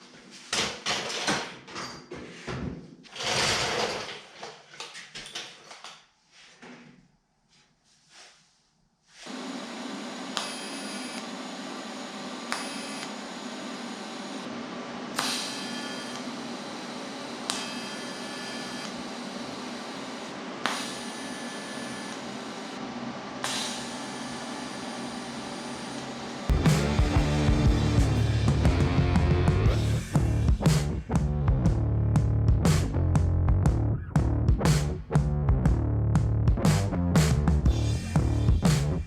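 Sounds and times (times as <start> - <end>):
machine hum and hiss: 9.2 - 30.5
music: 26.5 - 39.0.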